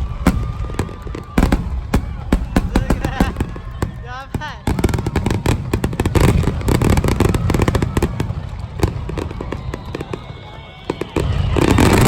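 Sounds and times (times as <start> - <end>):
fireworks crackling and banging: 0.0 - 12.0.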